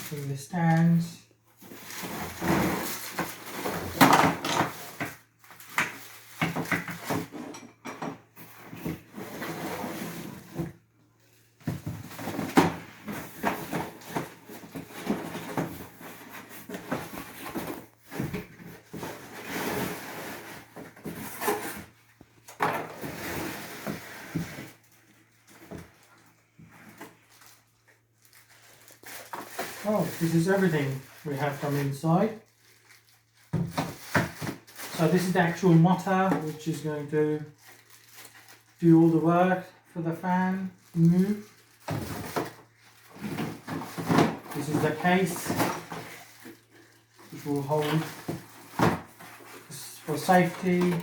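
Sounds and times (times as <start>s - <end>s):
cardboard rustling: 8.4s - 31.7s, 40.3s - 51.0s.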